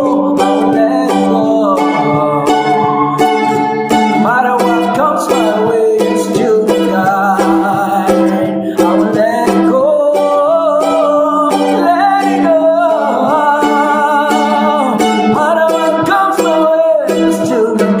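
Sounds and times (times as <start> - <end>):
held low note: 0.0 - 5.8
mandolin melody: 0.0 - 18.0.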